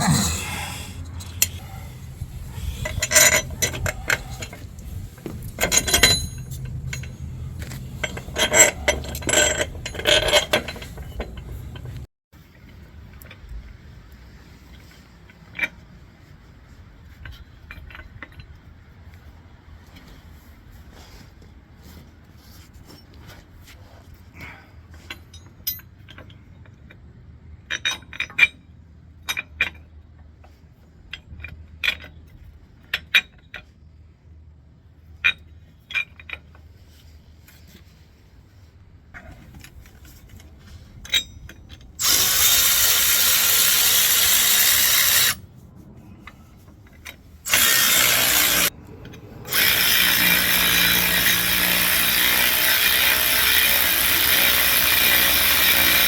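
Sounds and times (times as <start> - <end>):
power tool running: 42.0 - 45.4, 47.5 - 48.7, 49.5 - 56.0.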